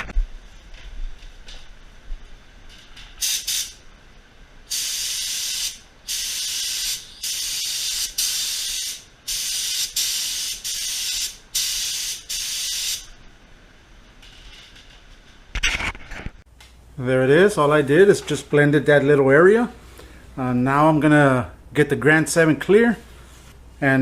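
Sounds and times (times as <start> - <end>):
paint spray gun hissing: 3.2 - 3.8, 4.7 - 13.1.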